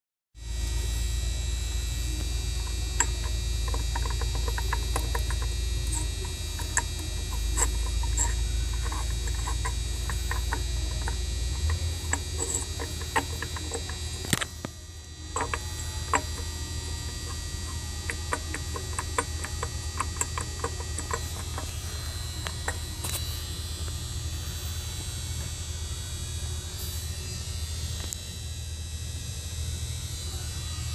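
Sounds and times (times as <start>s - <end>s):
car engine drone: 0.4s - 28.2s
engine ticking and clicking: 2.1s - 14.7s, 15.3s - 21.7s.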